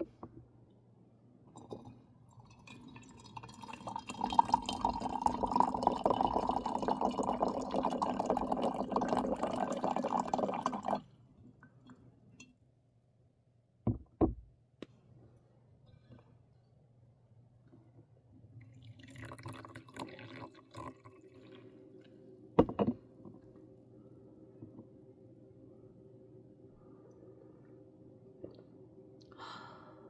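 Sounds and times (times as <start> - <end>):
water pouring into cup: 1.6 - 11.1, 18.6 - 21.8.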